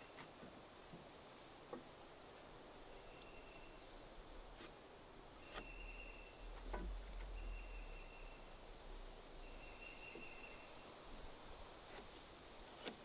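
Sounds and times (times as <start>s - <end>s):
low rumble: 5.6s - 10.5s.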